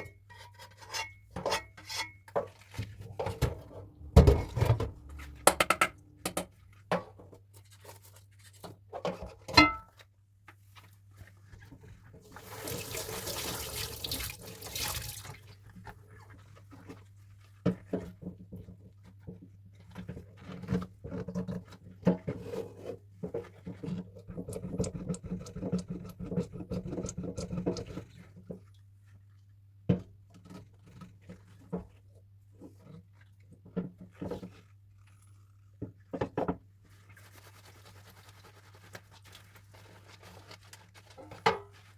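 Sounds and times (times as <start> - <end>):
dish scrubbing: 0.7 - 6.7, 12.0 - 17.0
faint low hum: 2.8 - 6.9
running water: 12.3 - 15.5.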